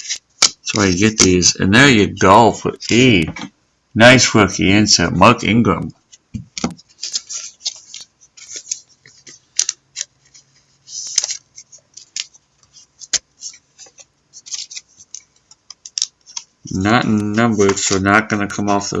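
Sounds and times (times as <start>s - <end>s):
plastic wrapping crinkling: 6.1s - 19.0s.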